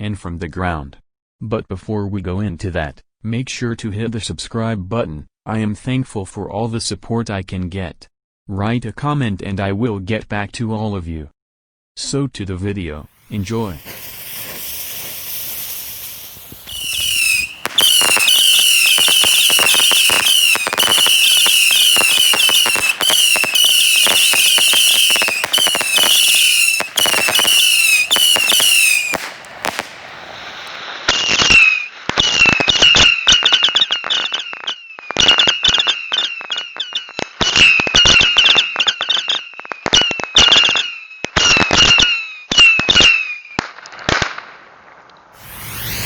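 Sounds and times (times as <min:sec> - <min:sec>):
whistling fireworks missiles: 0:13.1 - 0:44.5, 0:45.4 - 0:46.0
sharp cracking bangs: 0:13.2 - 0:30.8
fuse hiss: 0:13.2 - 0:30.9.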